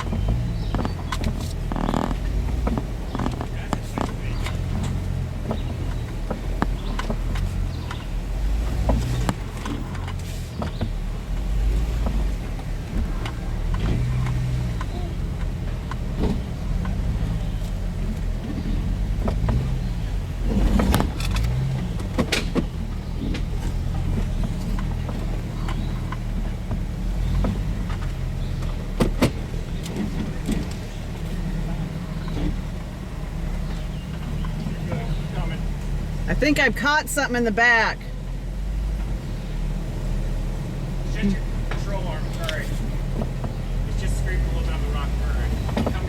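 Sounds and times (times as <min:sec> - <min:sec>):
sharp knocks and clatters: 0:00.0 - 0:36.1, 0:41.2 - 0:46.0
car engine running low speed: 0:00.0 - 0:46.0.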